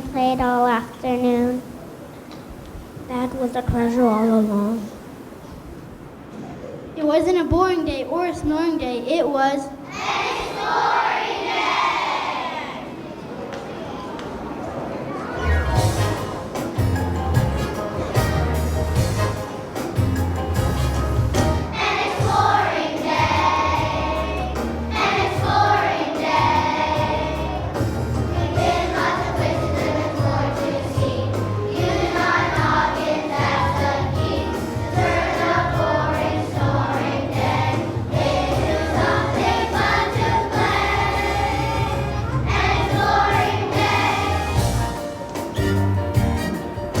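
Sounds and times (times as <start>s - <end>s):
children's choir singing: 9.8s - 14.1s, 21.0s - 45.6s
instrumental accompaniment: 15.4s - 47.0s.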